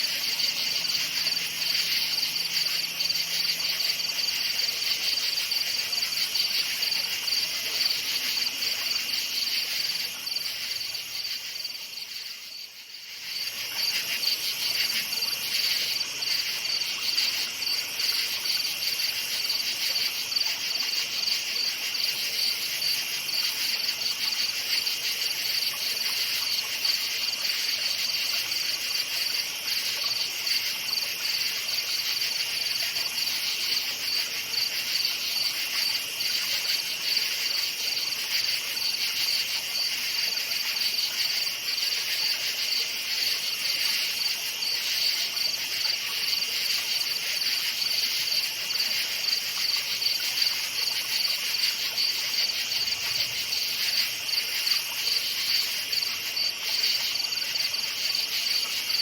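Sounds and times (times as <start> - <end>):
crickets chirping: 0.0 - 59.0.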